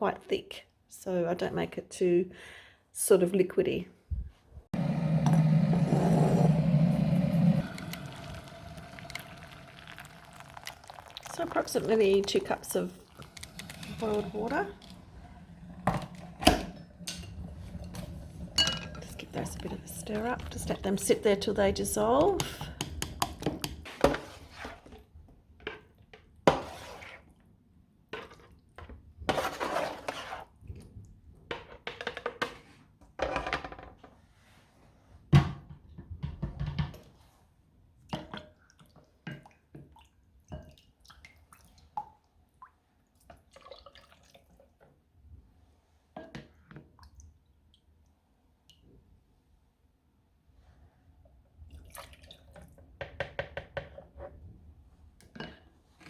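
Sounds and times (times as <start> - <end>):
liquid being poured: 5.8 - 20.8
dishes and utensils clinking: 16.6 - 19.1.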